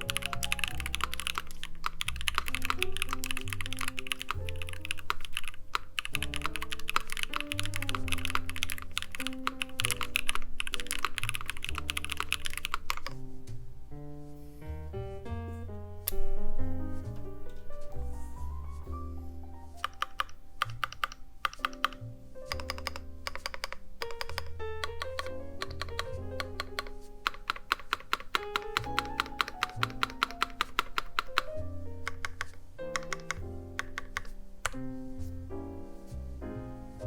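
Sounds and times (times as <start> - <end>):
mechanical keyboard typing: 0.0 - 13.2, 19.8 - 34.8
background music: 0.0 - 37.0.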